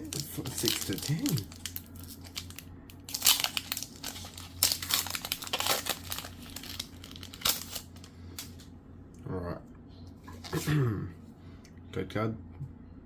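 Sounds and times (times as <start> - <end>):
foil wrapper tearing and crinkling: 0.0 - 8.6.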